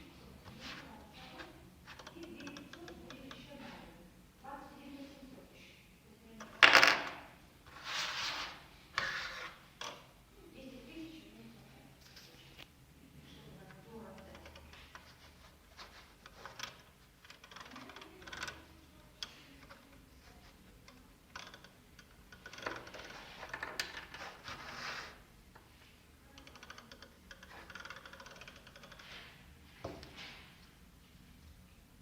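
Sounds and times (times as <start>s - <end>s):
plastic parts rattling: 15.8s - 18.6s, 21.3s - 25.1s
plastic ratchet clicking: 26.4s - 29.0s.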